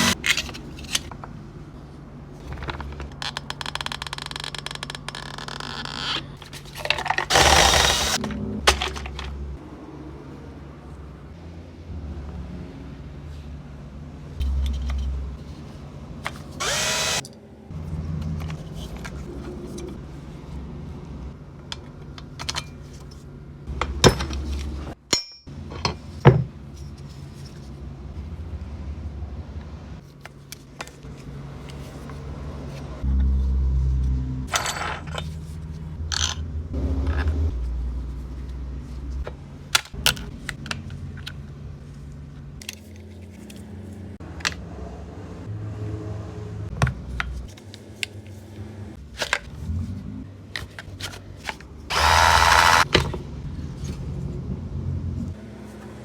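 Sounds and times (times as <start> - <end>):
low rumbling handling noise: 6.2 - 9.8
metal tools clicking and clinking: 24.0 - 26.0.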